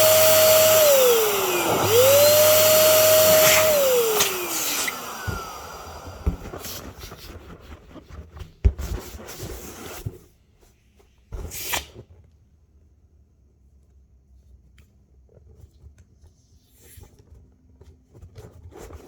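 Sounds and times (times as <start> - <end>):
electric pump motor winding down: 0.0 - 6.5
rubber balloon rubbing: 0.0 - 10.1.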